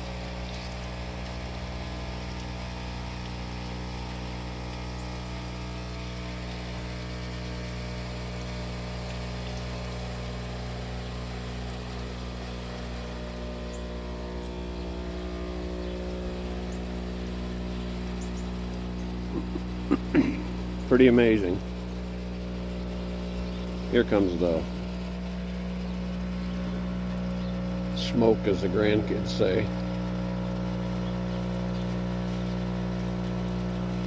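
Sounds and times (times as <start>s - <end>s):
heat pump humming: 0.0s - 34.0s.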